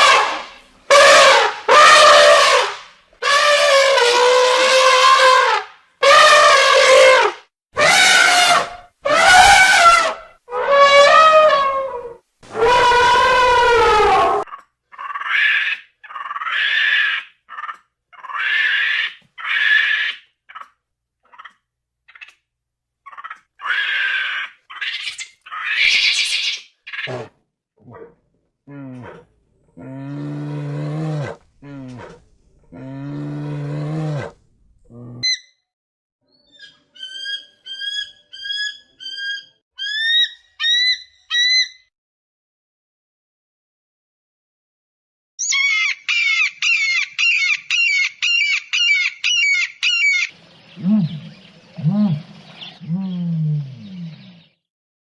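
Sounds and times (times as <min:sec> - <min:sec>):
animal crying in high calls: 0:07.8 - 0:17.3, 0:18.2 - 0:20.2, 0:23.6 - 0:27.3, 0:36.6 - 0:41.8, 0:45.4 - 0:50.3
bird calling: 0:45.4 - 0:54.6.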